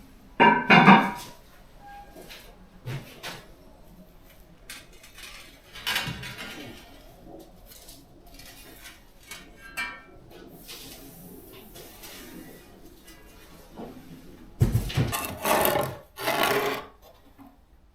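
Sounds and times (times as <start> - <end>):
bricks clinking and knocking: 15.0 - 16.9.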